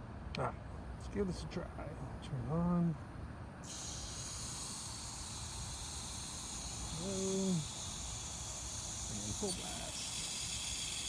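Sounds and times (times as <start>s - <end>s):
water spraying from nozzle: 3.7s - 11.0s.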